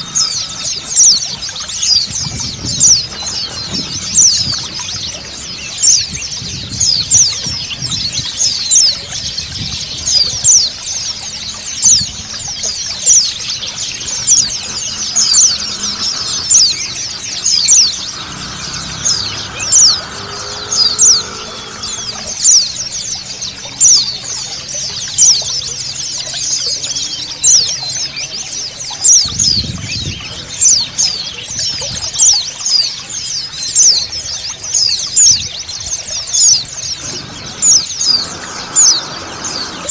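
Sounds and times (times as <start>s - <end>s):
birds chirping and twittering: 0.0s - 39.9s
running water: 0.0s - 39.9s
sharp bird chirps: 11.8s - 22.9s.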